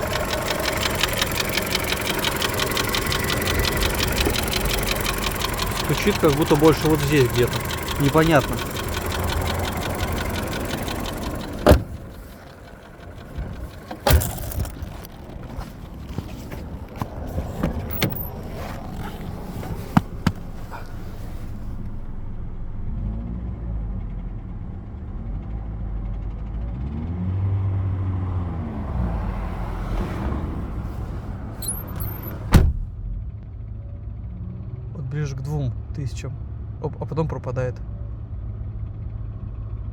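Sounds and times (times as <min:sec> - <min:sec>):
engine knock: 0:00.0 - 0:21.9
car engine revving: 0:00.0 - 0:32.9
sharp thumps: 0:08.5 - 0:12.6, 0:13.2 - 0:21.0.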